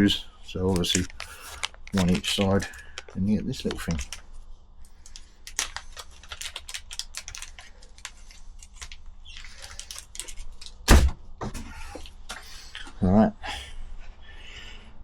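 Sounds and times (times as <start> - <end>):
rustling: 0.3 - 11.1.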